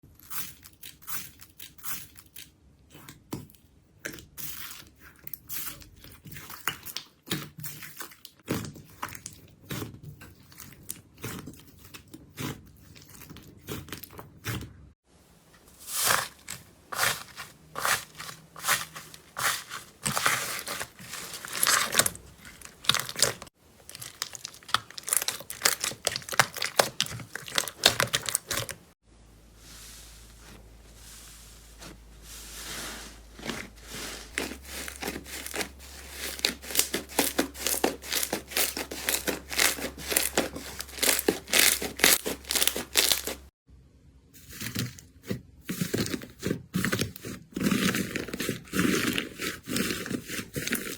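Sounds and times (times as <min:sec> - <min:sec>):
slime squishing: 0:00.2 - 0:14.9, 0:15.6 - 0:29.0, 0:29.6 - 0:43.5, 0:44.4 - 0:50.9
slime crackling and popping: 0:19.4 - 0:28.9, 0:34.4 - 0:43.5.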